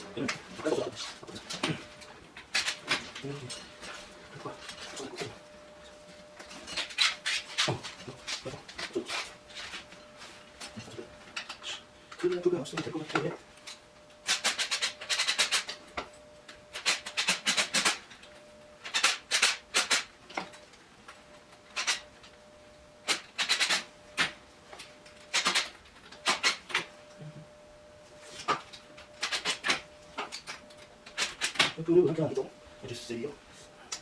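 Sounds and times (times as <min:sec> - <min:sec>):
faint steady hum: 0:00.0 - 0:34.0
small hard parts clicking: 0:11.3 - 0:15.8, 0:16.7 - 0:18.1, 0:18.8 - 0:20.6, 0:21.7 - 0:22.1, 0:23.0 - 0:26.9, 0:29.2 - 0:31.8.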